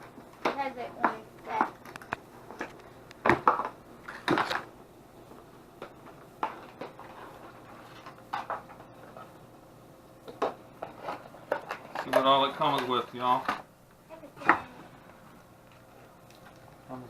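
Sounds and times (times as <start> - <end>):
plastic packaging clicks and knocks: 0.4 - 4.7.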